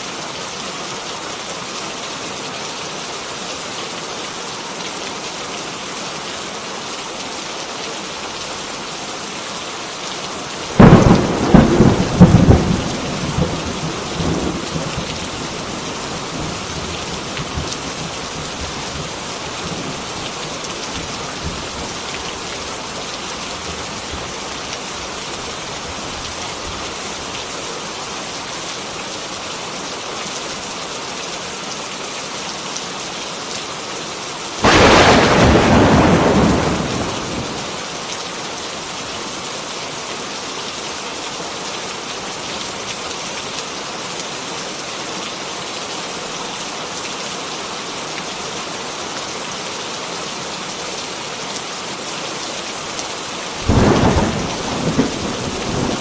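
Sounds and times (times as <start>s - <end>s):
heavy rain: 0.0s - 56.0s
thunderclap rumbling: 10.8s - 16.7s, 34.6s - 37.8s, 53.7s - 56.0s.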